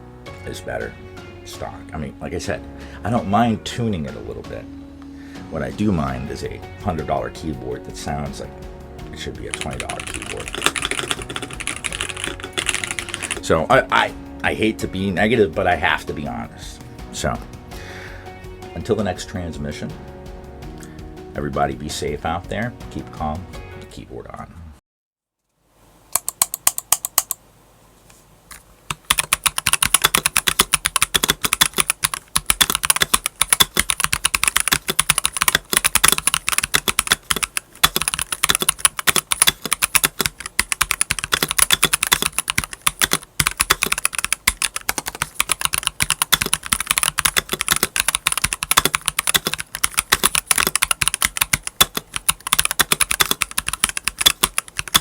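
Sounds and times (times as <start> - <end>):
fast typing on mechanical keyboard: 9.4 - 13.5, 26.2 - 27.4, 28.9 - 55.0.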